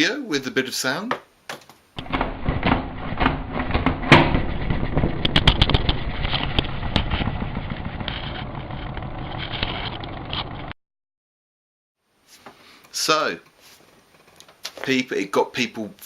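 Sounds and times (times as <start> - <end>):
salad spinner whirring and rattling: 2.0 - 10.7.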